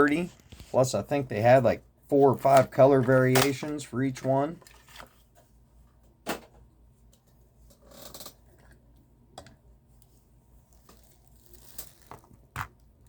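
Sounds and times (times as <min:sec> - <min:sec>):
packaging rustle: 0:10.8 - 0:12.4.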